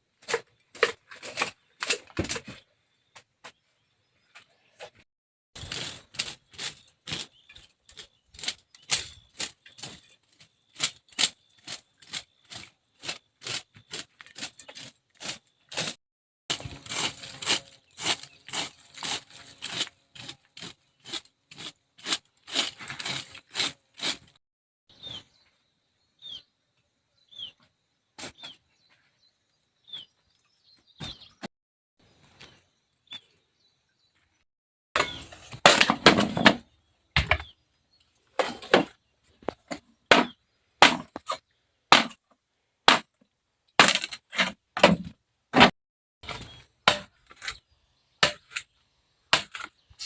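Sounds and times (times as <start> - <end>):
bird chirping: 24.9 - 31.5, 32.1 - 34.4.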